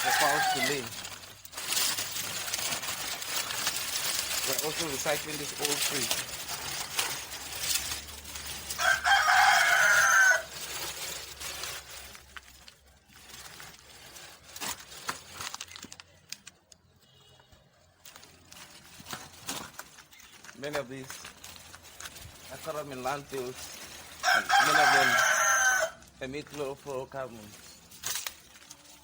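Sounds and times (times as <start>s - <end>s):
rooster crowing: 0.0s - 1.0s, 8.6s - 10.6s, 24.2s - 26.0s
rustling: 0.0s - 16.5s, 18.0s - 29.0s.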